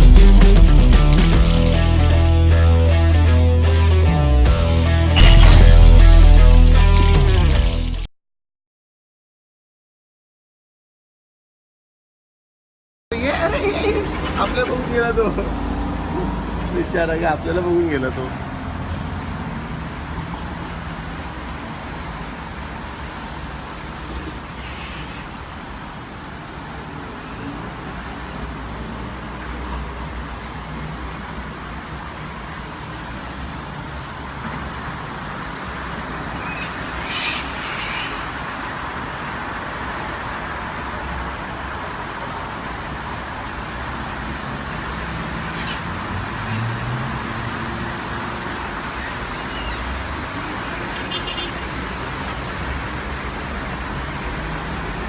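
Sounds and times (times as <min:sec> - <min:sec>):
traffic rumble and hiss: 0:13.1 - 0:55.0
bird calls: 0:36.2 - 0:39.0, 0:49.0 - 0:50.0.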